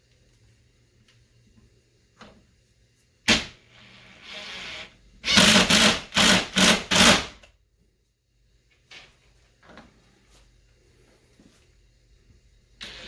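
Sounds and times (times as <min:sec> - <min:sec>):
power drill driving screw: 0:03.8 - 0:07.4.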